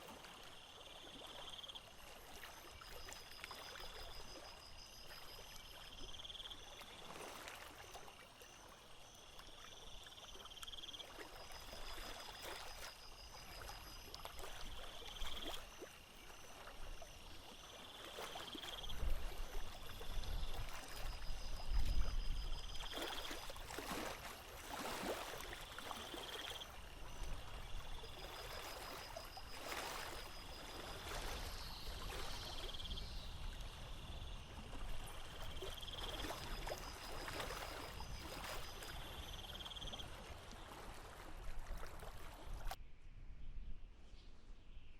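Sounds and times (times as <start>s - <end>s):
water lapping against boat: 0.0s - 42.8s
wind rumble on microphone: 18.8s - 22.9s, 30.4s - 44.9s.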